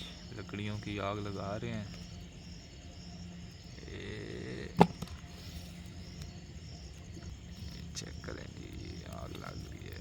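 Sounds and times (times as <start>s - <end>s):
crickets chirping: 0.0s - 10.0s.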